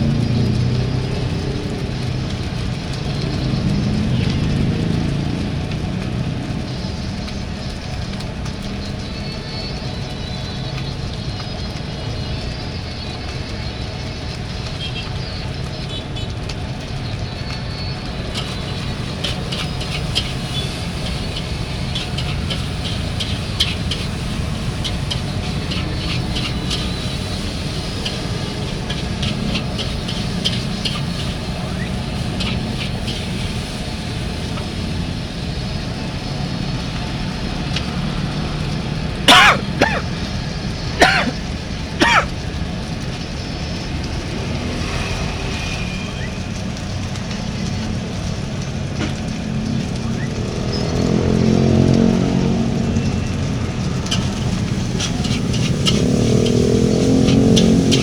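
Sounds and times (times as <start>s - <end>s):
light crackle: 0.0s - 58.0s
street traffic rumble: 0.0s - 58.0s
motorcycle engine passing: 50.6s - 53.4s, 54.2s - 58.0s.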